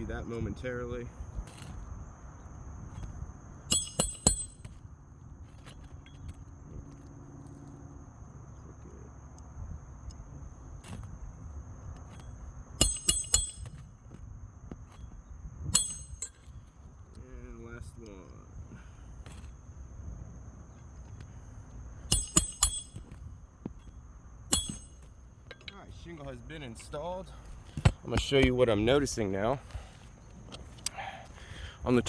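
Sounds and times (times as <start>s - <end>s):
hatchet striking roofing nails: 3.7s - 4.8s, 12.8s - 14.2s, 15.8s - 16.5s, 22.0s - 23.9s, 24.5s - 25.8s.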